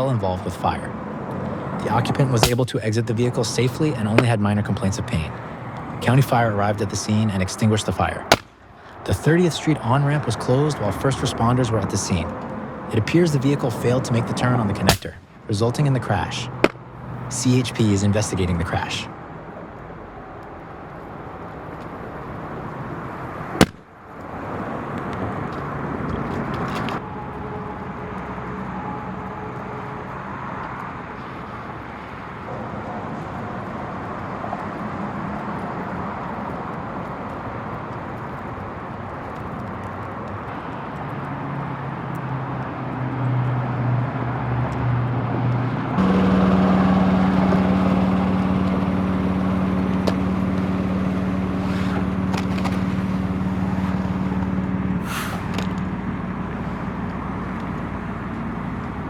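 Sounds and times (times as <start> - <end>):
traffic noise: 0.0 - 59.0
low engine hum: 39.8 - 59.0.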